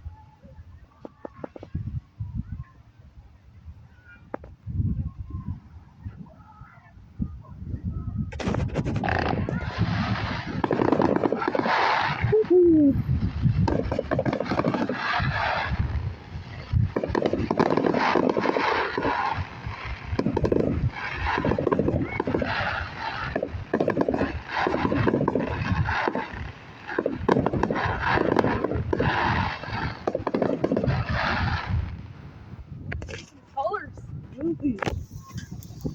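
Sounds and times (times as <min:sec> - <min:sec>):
fireworks popping and crackling: 0:01.0 - 0:01.8, 0:08.3 - 0:33.4, 0:34.7 - 0:35.9.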